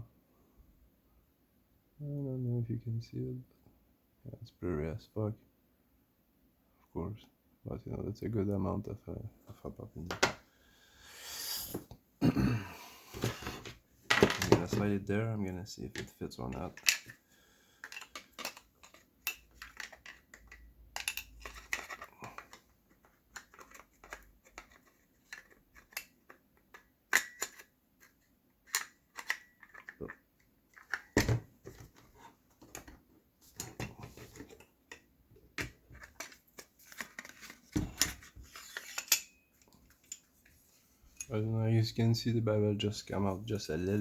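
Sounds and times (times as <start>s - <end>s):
rifle parts clicking and tapping: 17.8s - 22.6s, 23.3s - 31.3s.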